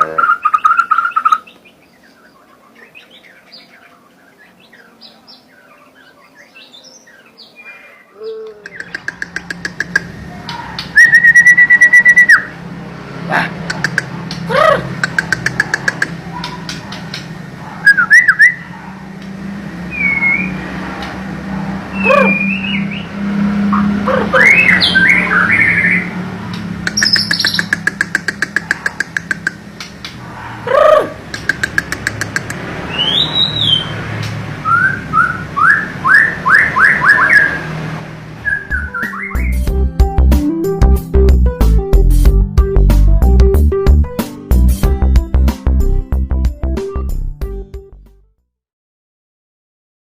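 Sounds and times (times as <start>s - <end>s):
bird singing whistled notes: 10.8s - 12.6s, 17.8s - 18.6s, 19.9s - 20.6s, 21.9s - 23.2s, 24.4s - 26.1s, 27.0s - 27.7s, 32.9s - 33.9s, 34.6s - 37.6s, 38.4s - 39.7s
background music: 38.7s - 48.2s.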